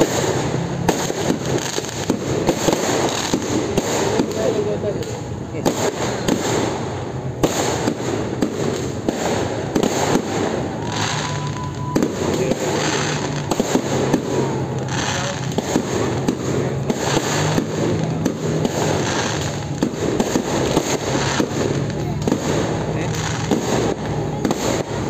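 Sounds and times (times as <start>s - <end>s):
fireworks bangs and crackles: 0.0s - 25.0s.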